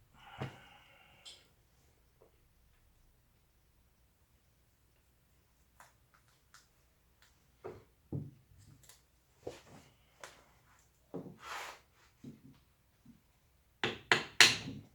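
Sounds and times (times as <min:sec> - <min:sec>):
carving tool knocking wood: 0:13.8 - 0:14.9.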